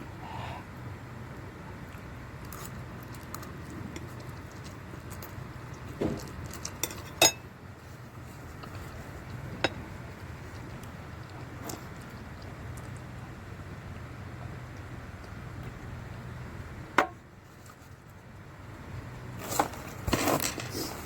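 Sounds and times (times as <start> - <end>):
low steady hum: 0.0 - 21.0
utensils clinking against a bowl: 6.2 - 7.4.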